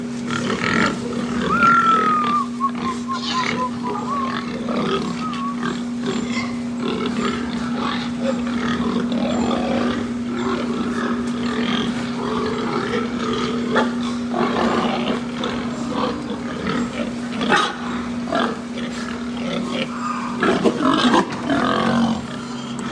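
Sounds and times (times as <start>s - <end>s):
steady hum: 0.0s - 8.5s
pigs grunting: 0.0s - 22.9s.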